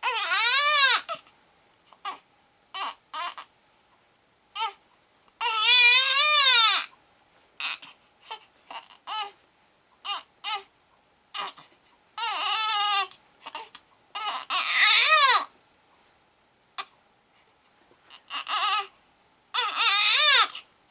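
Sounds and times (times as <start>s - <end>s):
baby crying: 0.0s - 1.2s, 2.0s - 3.5s, 4.6s - 4.8s, 5.4s - 6.9s, 7.6s - 9.4s, 10.0s - 10.7s, 11.4s - 15.5s, 18.1s - 18.9s, 19.5s - 20.7s
baby whimpering and sobbing: 0.0s - 1.3s, 7.6s - 9.4s, 11.4s - 15.5s, 18.1s - 18.9s, 19.6s - 20.6s.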